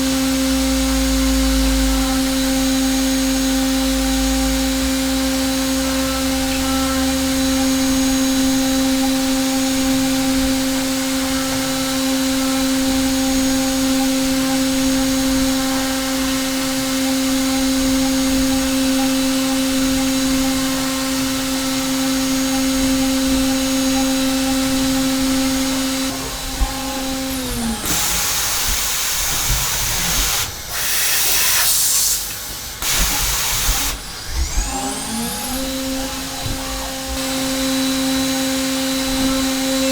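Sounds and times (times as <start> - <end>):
metal cutting noise: 0.0 - 39.9
milling spindle whine: 0.0 - 39.9
loud hissing bursts: 27.8 - 34.1.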